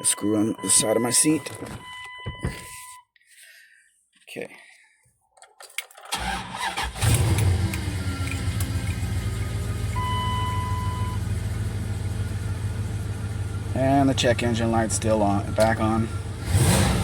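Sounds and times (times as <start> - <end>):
engine cranking and idling: 6.1 - 17.0.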